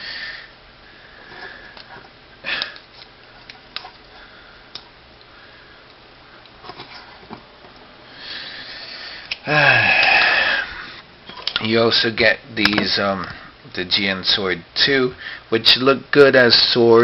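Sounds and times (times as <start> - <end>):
plastic parts clicking and tapping: 12.6 - 13.4.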